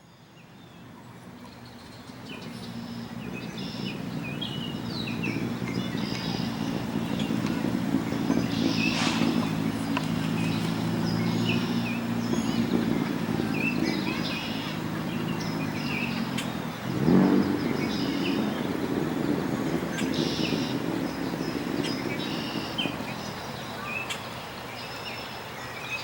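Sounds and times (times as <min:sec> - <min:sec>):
traffic hum: 0:00.2 - 0:25.9
bird chirps: 0:01.5 - 0:18.8.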